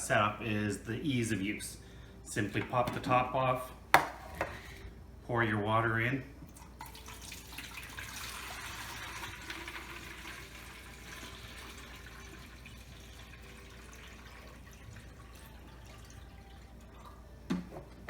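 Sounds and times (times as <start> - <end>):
water pouring into tank: 6.8 - 17.2.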